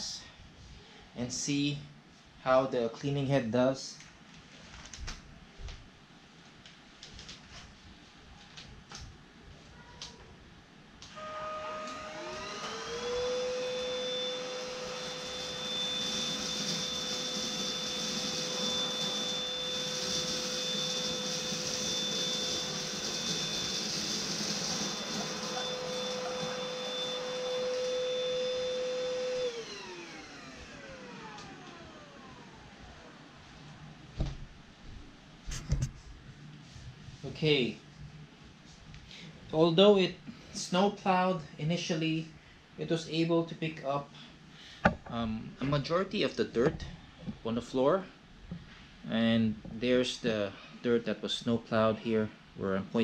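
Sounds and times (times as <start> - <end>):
stick vacuum motor whine: 11.0 - 33.2
vacuum brush rushing airflow: 11.2 - 32.7.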